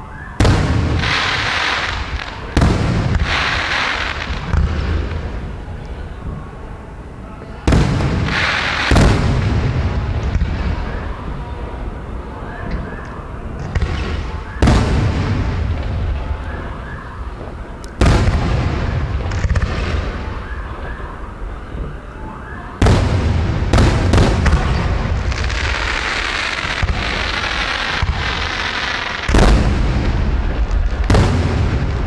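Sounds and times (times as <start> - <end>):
dense firework crackling: 0.0 - 12.4, 13.2 - 32.0
sharp firework bangs: 0.4 - 5.3, 7.7 - 11.2, 13.6 - 21.0, 22.8 - 32.0
firework shells booming: 0.4 - 5.4, 7.7 - 11.1, 13.6 - 21.0, 22.8 - 32.0.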